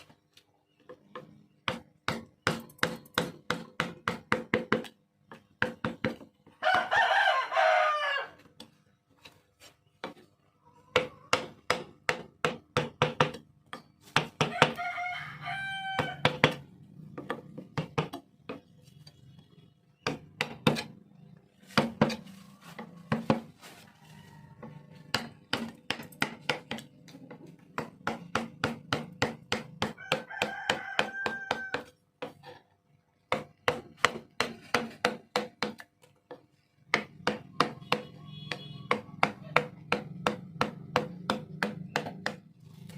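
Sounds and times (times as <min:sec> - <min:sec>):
hammering on wood: 0:01.1 - 0:07.0, 0:10.9 - 0:14.8, 0:15.9 - 0:18.7, 0:20.0 - 0:21.0, 0:21.7 - 0:23.5, 0:25.1 - 0:32.4, 0:33.2 - 0:42.6
rooster crowing: 0:06.6 - 0:08.4, 0:14.5 - 0:16.6, 0:23.7 - 0:25.2, 0:29.9 - 0:32.0.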